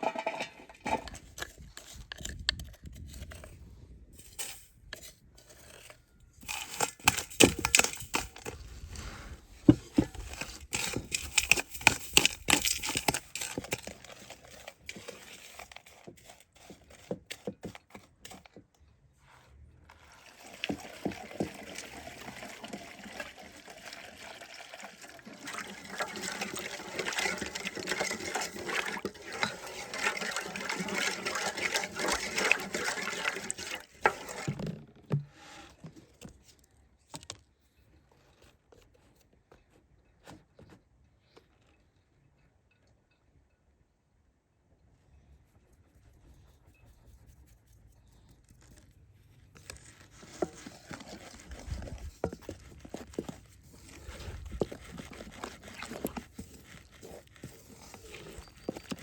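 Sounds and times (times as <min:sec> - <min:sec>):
clicks and crackles of crunching material: 0:04.2 - 0:18.9, 0:48.0 - 0:59.0
running water: 0:20.0 - 0:34.7.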